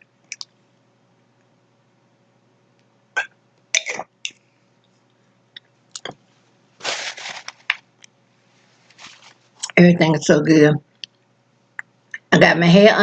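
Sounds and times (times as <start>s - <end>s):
mouth clicks and smacks: 0.2s - 0.6s, 10.9s - 12.3s.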